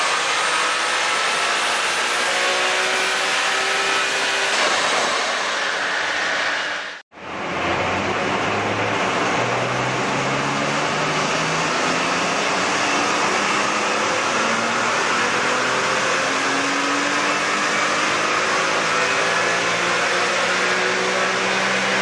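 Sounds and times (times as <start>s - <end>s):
car engine revving under load: 0.0s - 22.0s
loud rushing noise: 3.6s - 15.0s.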